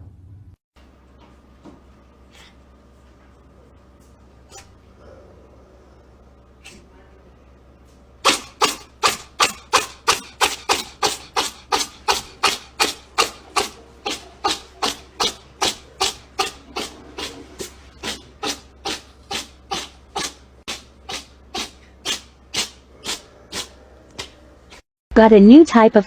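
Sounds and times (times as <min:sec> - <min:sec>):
rhythmic scratching strokes: 0:08.2 - 0:23.8.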